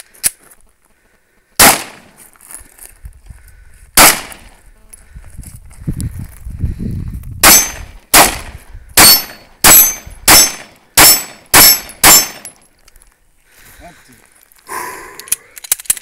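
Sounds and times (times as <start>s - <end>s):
pistol shots: 1.6s - 2.1s, 4.0s - 4.5s, 7.4s - 12.6s
bullets ringing on steel target: 7.4s - 7.8s, 9.0s - 12.6s.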